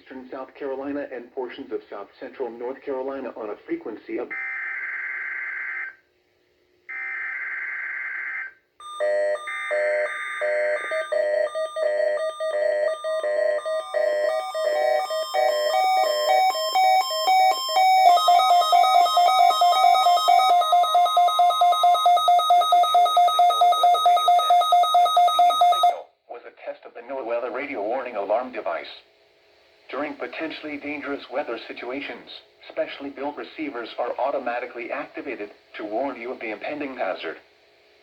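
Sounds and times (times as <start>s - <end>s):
radio alarm beeps: 4.3s - 6.0s, 6.9s - 26.0s.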